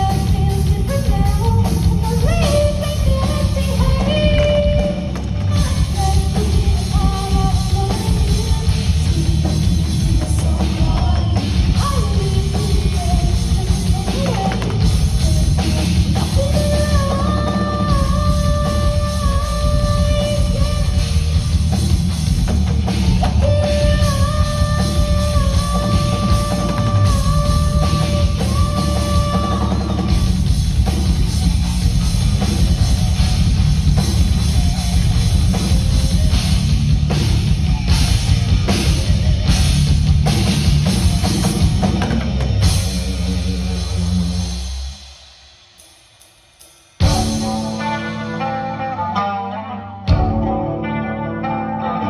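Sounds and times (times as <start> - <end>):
hard rock band playing: 0.0 - 45.0, 47.0 - 52.0
distorted guitars: 0.0 - 45.2, 47.0 - 52.0
pounding drum kit: 0.0 - 48.1, 50.1 - 50.6
guitar lead holding long notes: 47.0 - 52.0.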